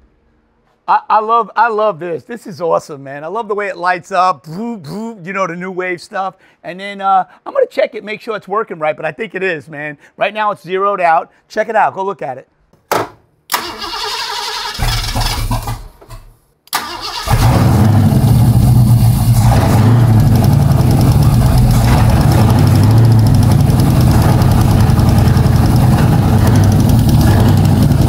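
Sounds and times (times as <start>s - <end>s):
engine cranking and idling: 13.5s - 28.0s.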